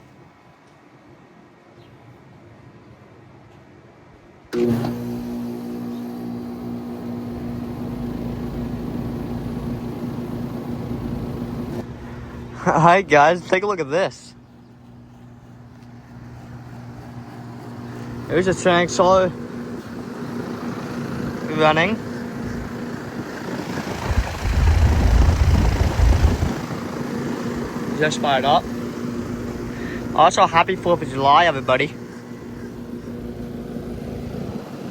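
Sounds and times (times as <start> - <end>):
compressor humming: 4.5 - 34.9
fan rushing: 4.5 - 34.9
low rumble: 23.7 - 26.7.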